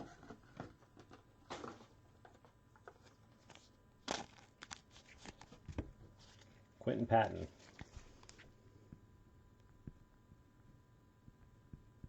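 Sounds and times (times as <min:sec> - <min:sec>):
packaging rustling: 0:02.9 - 0:06.6, 0:07.4 - 0:08.5.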